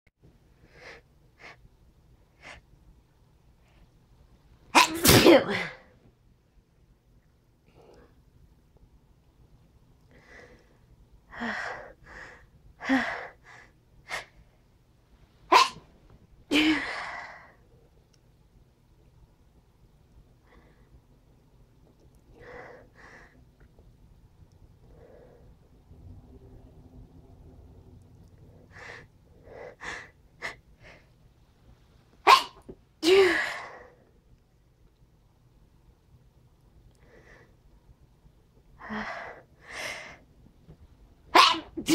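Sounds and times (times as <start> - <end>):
person sneezing: 4.8 - 5.8, 15.5 - 15.8, 32.3 - 33.8, 41.4 - 41.9.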